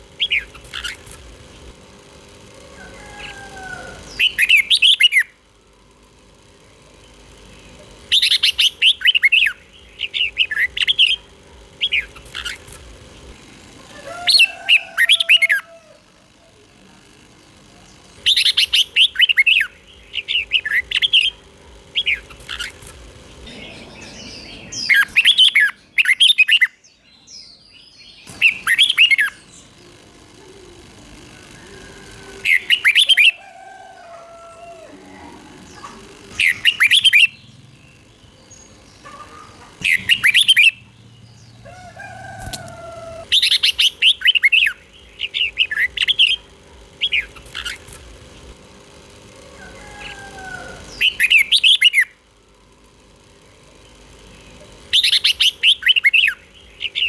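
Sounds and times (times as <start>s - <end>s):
bird warbling song: 0.0s - 1.7s, 2.6s - 5.4s, 6.9s - 16.0s, 17.4s - 30.6s, 31.2s - 48.6s, 49.4s - 52.2s, 53.4s - 57.0s
faint low bird calls: 49.3s - 52.2s.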